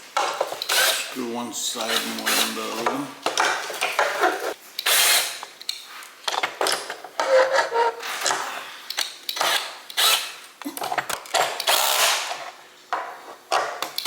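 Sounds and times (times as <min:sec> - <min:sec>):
screws being tightened by hand tool: 0:00.5 - 0:01.1, 0:01.8 - 0:05.5, 0:06.3 - 0:10.4, 0:11.0 - 0:12.5.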